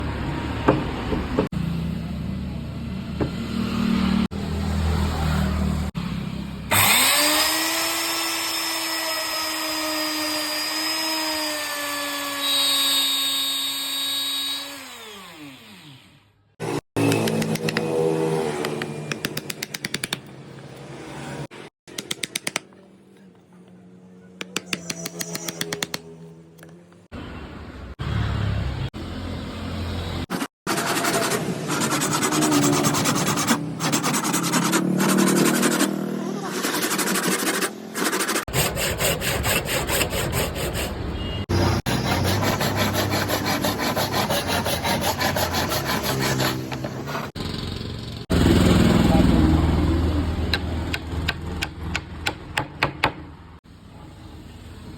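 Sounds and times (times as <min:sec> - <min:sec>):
wood being sawn: 0:30.3 - 0:47.4.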